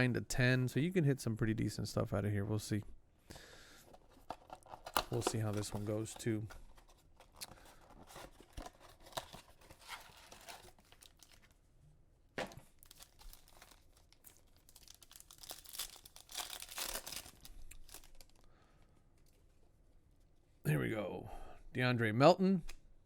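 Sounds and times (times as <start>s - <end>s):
foil wrapper crinkling: 4.2s - 11.6s, 12.7s - 18.5s.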